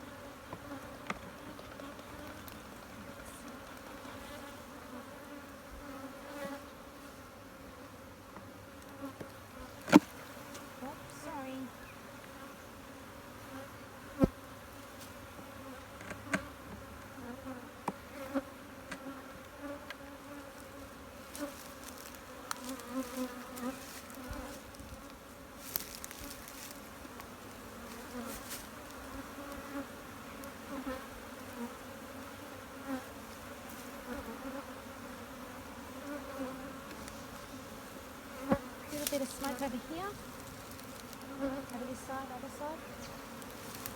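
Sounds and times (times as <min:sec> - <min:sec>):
honeybees buzzing: 0:00.0 - 0:43.9.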